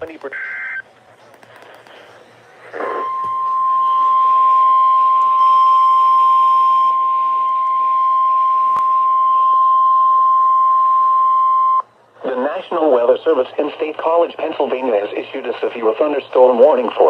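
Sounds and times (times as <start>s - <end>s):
steady warning alarm beep: 2.8s - 11.9s.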